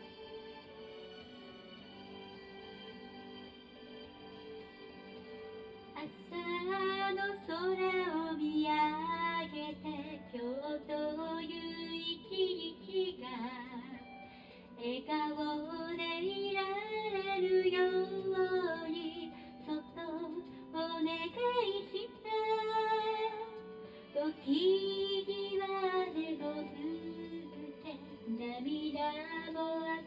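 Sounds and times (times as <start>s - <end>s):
instrumental backing music: 0.0s - 30.0s
woman singing: 6.0s - 30.0s.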